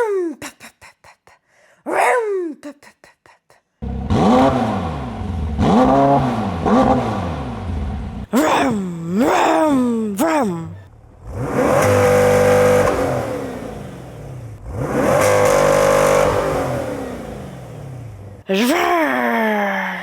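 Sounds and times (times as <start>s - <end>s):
woman imitating car engine: 0.0s - 1.2s, 1.9s - 3.0s, 8.2s - 14.0s, 18.4s - 20.0s.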